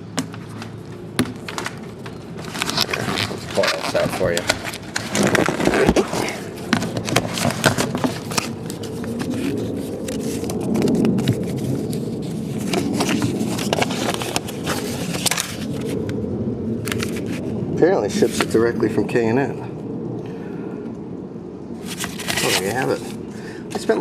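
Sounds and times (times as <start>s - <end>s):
packaging rustling and crackling: 0.0s - 16.2s, 21.8s - 23.2s.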